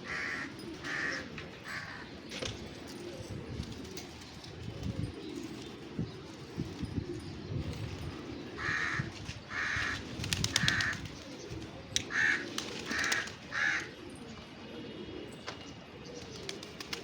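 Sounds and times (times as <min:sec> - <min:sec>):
crow cawing: 0:00.0 - 0:02.1, 0:08.6 - 0:10.0, 0:10.6 - 0:11.0, 0:12.1 - 0:14.0.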